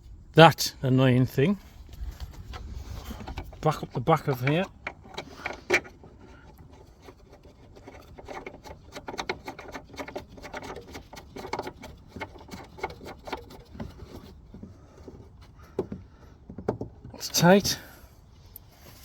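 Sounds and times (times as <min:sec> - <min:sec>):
plastic and metal clicks and rubbing: 0:01.9 - 0:17.2
screw being driven in: 0:02.5 - 0:16.0.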